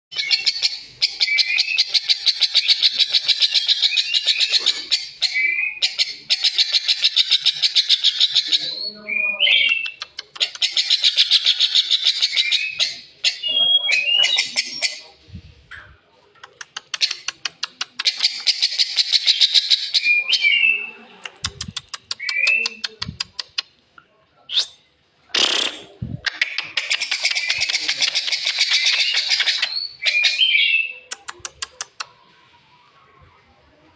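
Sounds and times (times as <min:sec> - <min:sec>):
bird rattling call: 0:25.4 - 0:30.5.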